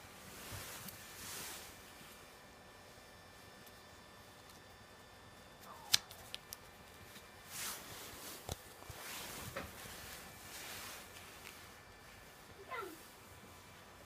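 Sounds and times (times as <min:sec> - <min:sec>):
short rustle: 0:07.0 - 0:14.0.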